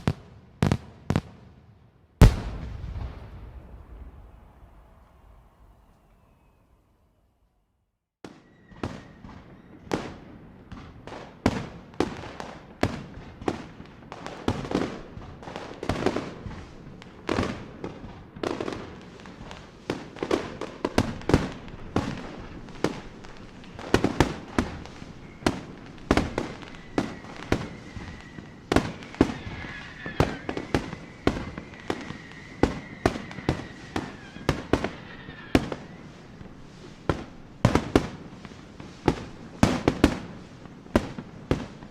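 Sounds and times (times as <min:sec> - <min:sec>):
firework crackling: 0:02.2 - 0:05.5, 0:11.1 - 0:41.9
firework bangs: 0:02.2 - 0:06.5, 0:08.2 - 0:41.9
high whistle: 0:03.9 - 0:07.1, 0:08.3 - 0:09.8, 0:25.0 - 0:36.4.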